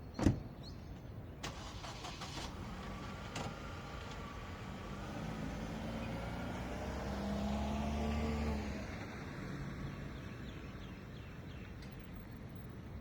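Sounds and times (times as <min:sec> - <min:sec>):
vehicle engine passing by: 0:01.6 - 0:10.2.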